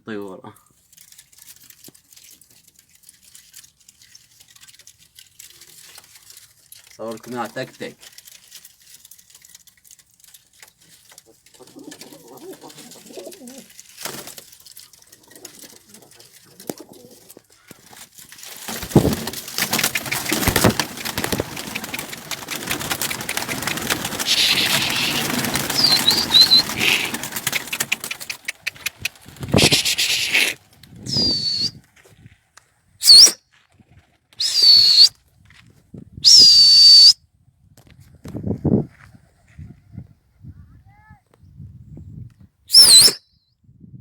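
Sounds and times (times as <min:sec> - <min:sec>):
pigeons flapping wings: 0:10.8 - 0:31.9
high chirps: 0:19.7 - 0:31.8
high whistle blasts: 0:31.1 - 0:31.8, 0:33.0 - 0:33.4, 0:34.4 - 0:35.1, 0:36.2 - 0:37.2, 0:42.7 - 0:43.3.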